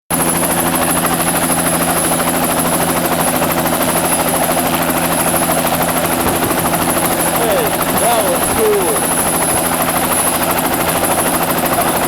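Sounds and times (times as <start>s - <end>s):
helicopter rotor beating: 0.1s - 12.0s
low engine hum: 4.5s - 12.0s.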